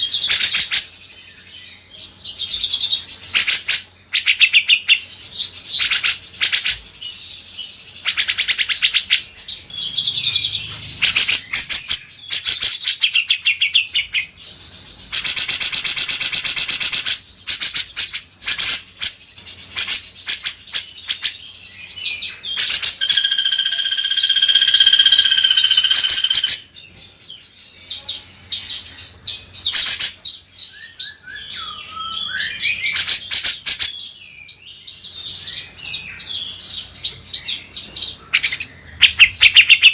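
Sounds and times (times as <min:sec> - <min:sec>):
songbirds singing fast trills: 0:00.0 - 0:39.9
sustained whistled bird tone: 0:21.8 - 0:26.8, 0:29.5 - 0:39.9.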